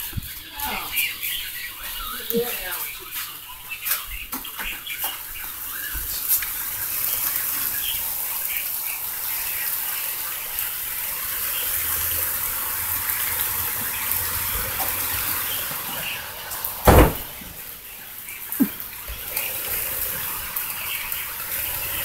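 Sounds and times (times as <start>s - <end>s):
heavy rain pouring: 0.0s - 22.0s
sharp knocks: 16.8s - 17.4s.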